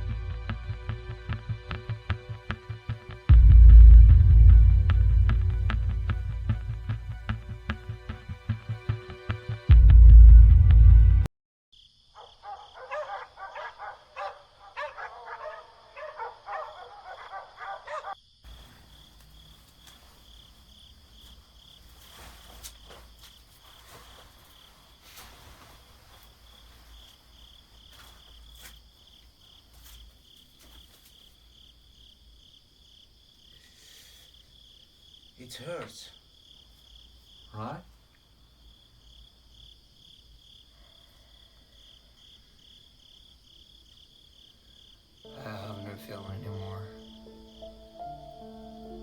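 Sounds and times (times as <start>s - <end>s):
crickets chirring: 11.8s - 49.0s.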